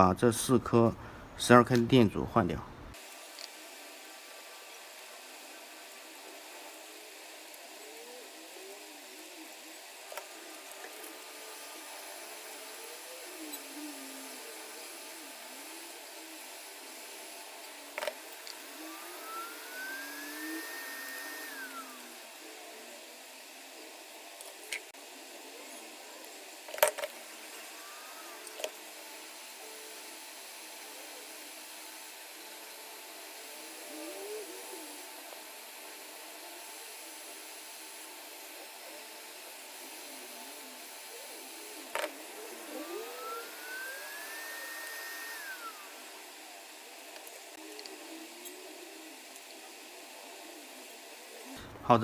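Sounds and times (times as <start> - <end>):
hot-air gun blowing: 2.9 - 23.7, 39.2 - 50.6.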